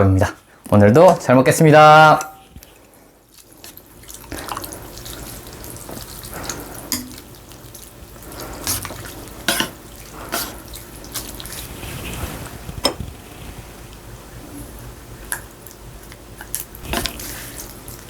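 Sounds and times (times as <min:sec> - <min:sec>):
noodles slurped: 0:02.6 - 0:12.8.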